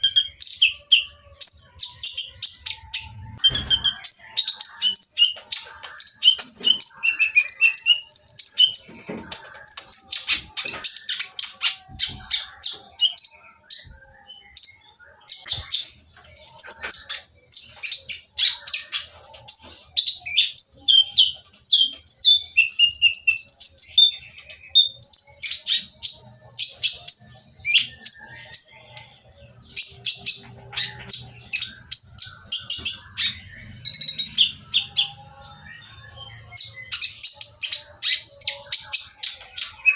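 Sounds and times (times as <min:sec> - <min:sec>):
sunbird twittering song: 0:00.0 - 0:08.9.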